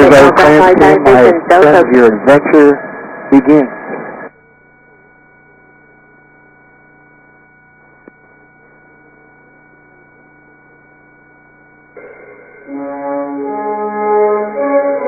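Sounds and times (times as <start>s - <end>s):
steady intercom tones: 0.0s - 4.3s, 12.0s - 15.0s
faint steady hum: 0.0s - 15.0s.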